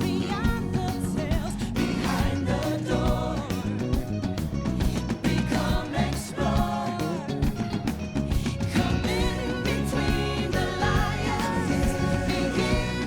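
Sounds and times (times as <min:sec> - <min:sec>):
band with steady beat: 0:00.0 - 0:13.0
group of voices singing: 0:00.0 - 0:13.0.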